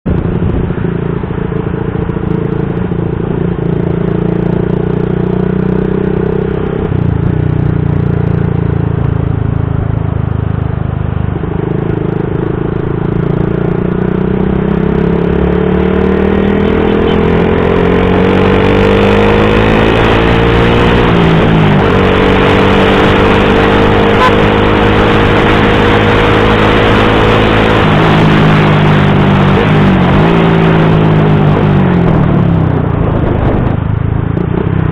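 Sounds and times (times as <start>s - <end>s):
wind noise on microphone: 0.0s - 3.2s, 14.3s - 34.9s
motorcycle engine revving: 0.1s - 34.9s.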